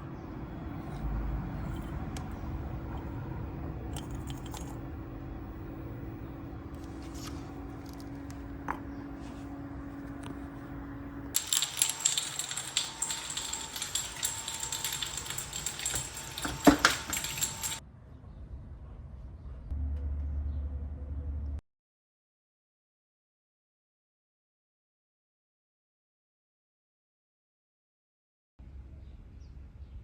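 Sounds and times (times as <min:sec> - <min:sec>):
steady low hum: 0:00.0 - 0:17.8
small hard objects rattling: 0:11.4 - 0:17.8.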